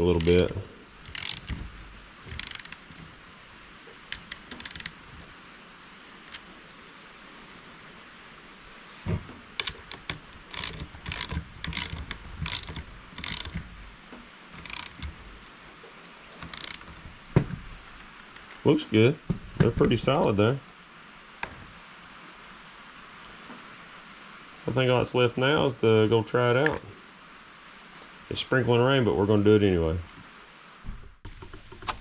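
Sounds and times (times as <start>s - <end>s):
ratchet wrench clicking: 0.0s - 1.7s, 2.3s - 3.0s, 4.1s - 5.0s, 9.6s - 13.7s, 14.6s - 15.2s, 16.4s - 17.0s.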